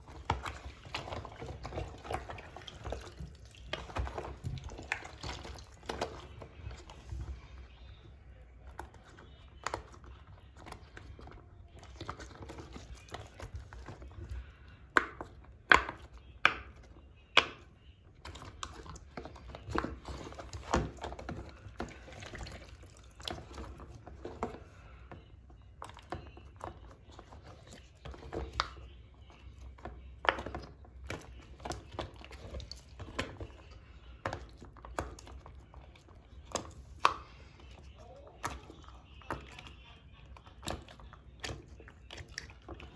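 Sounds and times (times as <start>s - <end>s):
water sloshing: 0.0s - 8.0s.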